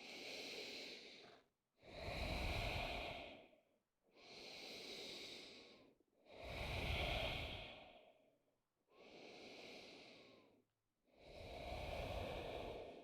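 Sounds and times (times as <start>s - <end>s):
person breathing deeply: 4.2s - 8.1s, 11.3s - 13.0s.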